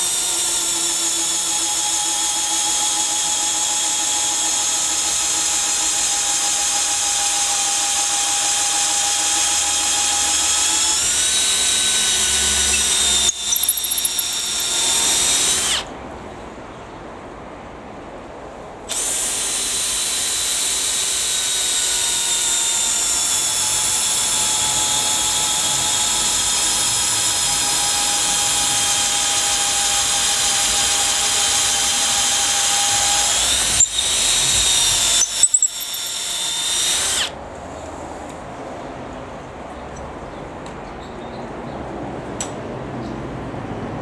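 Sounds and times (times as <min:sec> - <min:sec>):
cordless drill motor whine: 0:00.0 - 0:15.9, 0:18.9 - 0:37.4.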